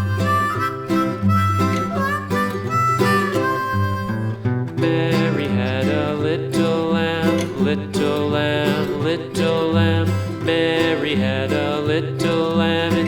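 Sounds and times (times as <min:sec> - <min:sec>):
country band playing: 0:00.0 - 0:05.4
acoustic guitar: 0:00.0 - 0:13.0
harmonica melody: 0:00.0 - 0:13.0.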